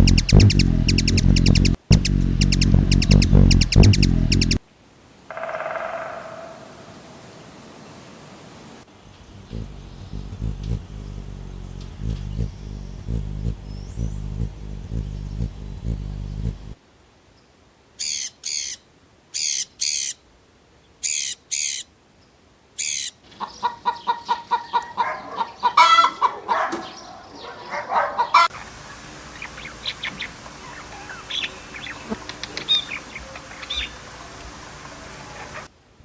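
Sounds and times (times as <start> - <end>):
high sharp bird calls: 0.0 - 4.6, 5.3 - 8.2, 9.2 - 16.8, 22.8 - 35.7
rapid low bird calls: 0.0 - 4.6, 5.3 - 16.8, 22.8 - 35.7
short bird chirps: 0.0 - 4.6, 9.2 - 16.8.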